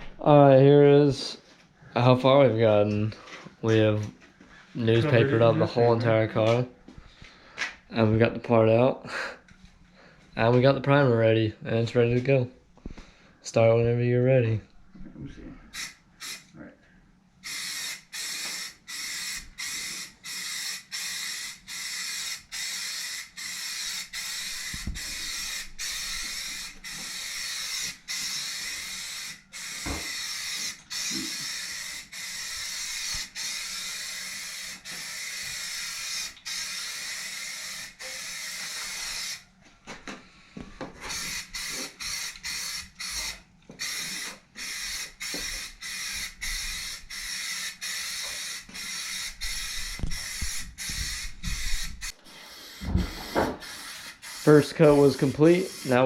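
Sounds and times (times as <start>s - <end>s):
aerosol spray hissing: 15.8s - 16.5s, 17.4s - 39.4s, 41.0s - 56.0s.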